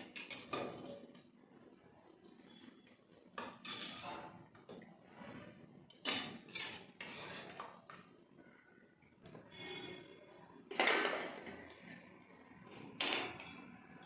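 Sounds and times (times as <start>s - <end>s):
pots and utensils clattering: 0.0s - 1.3s, 3.2s - 4.9s, 5.8s - 8.1s, 10.6s - 12.0s, 12.6s - 14.0s.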